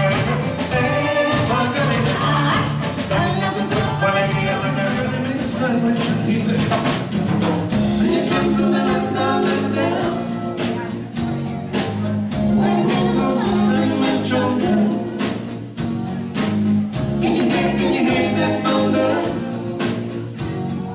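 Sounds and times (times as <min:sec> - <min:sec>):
person singing: 0:00.0 - 0:06.8, 0:07.8 - 0:11.2, 0:12.3 - 0:15.6, 0:17.2 - 0:20.1
live dance band: 0:00.0 - 0:20.9.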